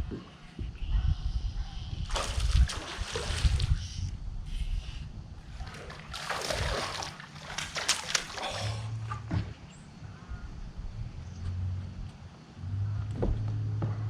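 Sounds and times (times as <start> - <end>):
wind rumble on microphone: 0.0 - 7.7, 8.8 - 14.0
water splashing: 2.1 - 3.8, 5.4 - 9.6.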